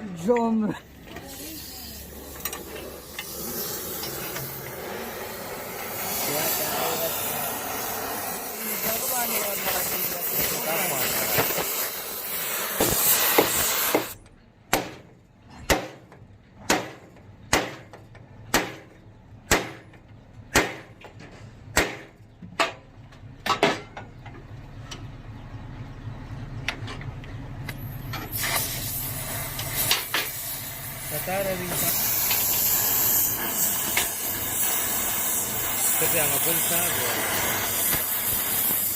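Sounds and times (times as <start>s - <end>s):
hiss of air: 1.1s - 14.2s, 28.2s - 38.9s
hammer striking: 12.8s - 14.1s, 14.7s - 22.8s.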